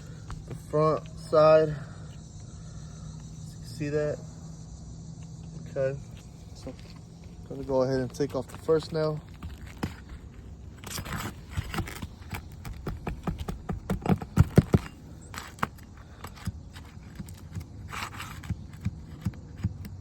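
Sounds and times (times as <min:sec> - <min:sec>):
metal tool scraping shingle: 0:06.1 - 0:19.9.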